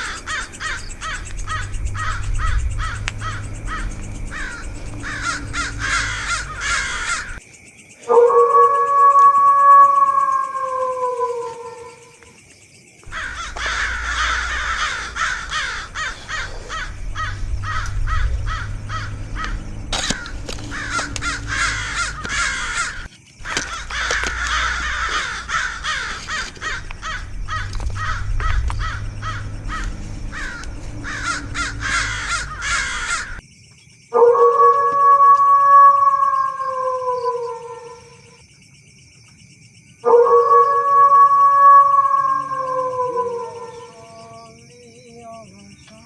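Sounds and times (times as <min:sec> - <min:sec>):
harsh crow-like cawing: 0:00.0 - 0:07.4, 0:13.1 - 0:33.4
low rumble: 0:00.0 - 0:07.4, 0:13.1 - 0:33.4
wavering howl-like tone: 0:00.9 - 0:07.4, 0:24.1 - 0:33.4.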